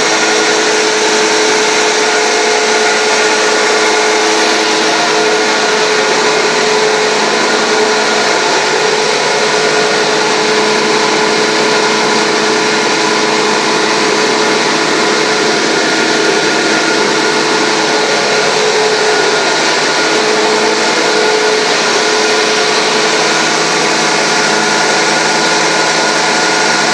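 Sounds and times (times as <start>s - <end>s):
grinder machine whirring: 0.0s - 26.9s.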